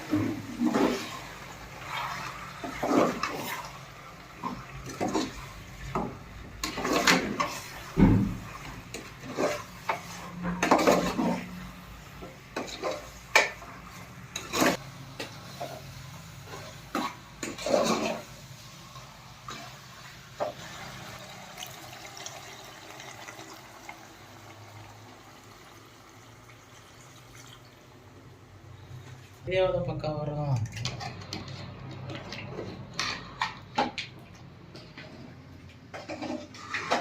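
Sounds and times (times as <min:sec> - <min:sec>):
pots and dishes clattering: 0:04.4 - 0:11.6, 0:12.2 - 0:18.3, 0:30.7 - 0:34.1, 0:35.8 - 0:37.0.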